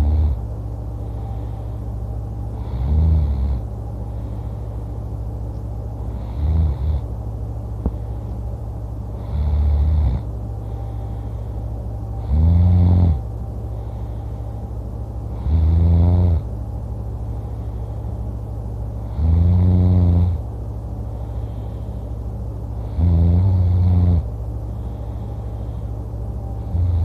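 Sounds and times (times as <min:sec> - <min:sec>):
person snoring loudly: 0:00.0 - 0:00.4, 0:02.6 - 0:03.6, 0:06.1 - 0:07.0, 0:09.2 - 0:10.3, 0:12.2 - 0:13.2, 0:15.4 - 0:16.4, 0:19.1 - 0:20.4, 0:22.8 - 0:24.2, 0:26.7 - 0:27.0
steady low hum: 0:00.0 - 0:27.0.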